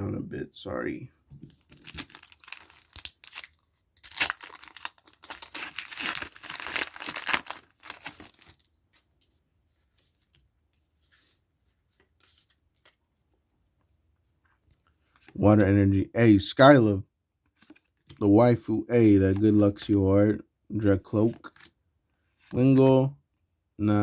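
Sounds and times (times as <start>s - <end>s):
cards rustling: 1.5s - 10.3s
foil wrapper tearing and crinkling: 1.7s - 8.7s.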